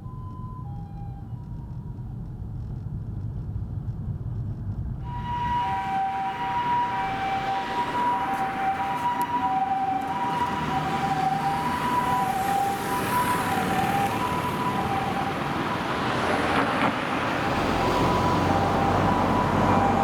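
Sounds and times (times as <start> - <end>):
two-tone ambulance siren: 0.0 - 2.3, 5.0 - 20.0
road traffic noise: 4.8 - 20.0.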